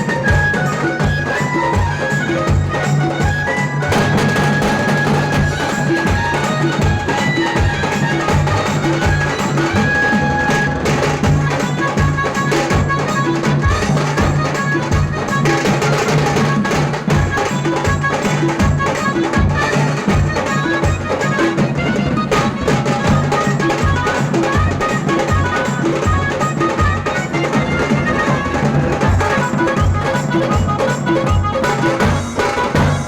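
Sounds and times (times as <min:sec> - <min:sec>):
electronic keyboard melody: 0:00.0 - 0:13.8
heavy bass drum beats: 0:00.0 - 0:33.0
rapid drum strokes: 0:00.0 - 0:33.0.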